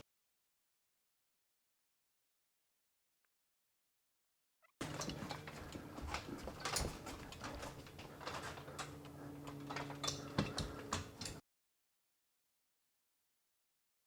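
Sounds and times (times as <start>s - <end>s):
faint steady hum: 4.8s - 11.4s
parts clicking and tapping: 4.8s - 11.4s.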